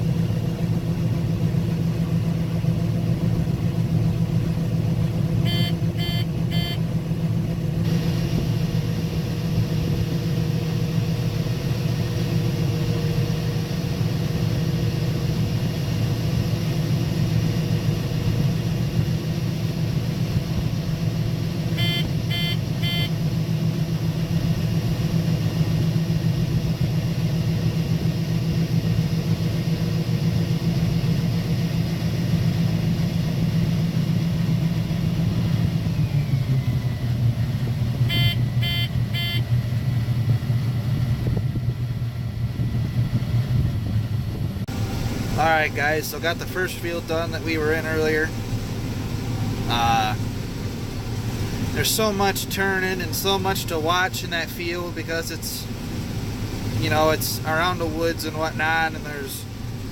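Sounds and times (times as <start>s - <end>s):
combine harvester engine drone: 0.0s - 59.9s
short high beeps: 5.4s - 6.8s, 21.8s - 23.1s, 38.1s - 39.5s.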